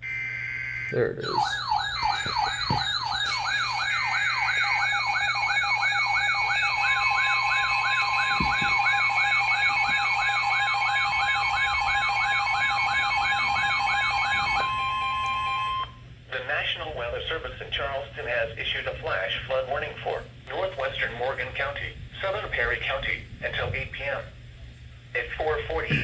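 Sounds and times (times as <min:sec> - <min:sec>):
falling siren-like alarm tone: 0:00.0 - 0:16.0
steady alarm tone: 0:00.0 - 0:16.1
higher warbling tone: 0:01.2 - 0:15.9.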